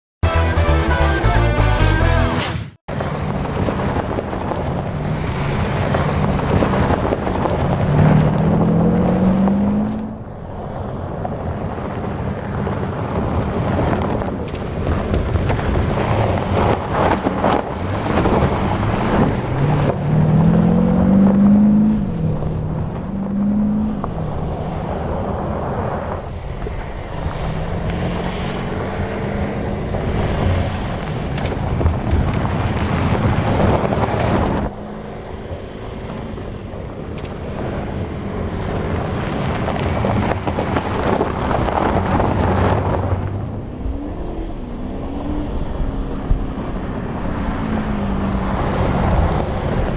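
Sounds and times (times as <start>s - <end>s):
wind noise on microphone: 28.9s - 34.8s, 36.8s - 49.9s.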